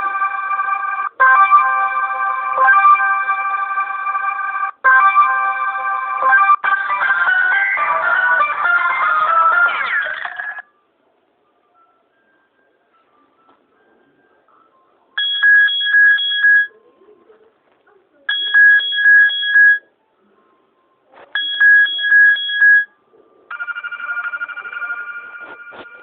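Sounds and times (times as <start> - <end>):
electronic pulsing phone ring: 21.4 - 22.9, 23.5 - 26.0
rapid trilling phone ring: 23.5 - 26.0.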